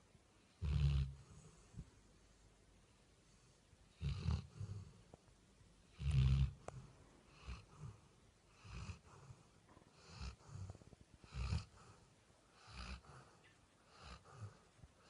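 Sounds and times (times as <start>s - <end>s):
dog snoring: 0.5s - 1.8s, 3.9s - 5.1s, 5.9s - 14.7s.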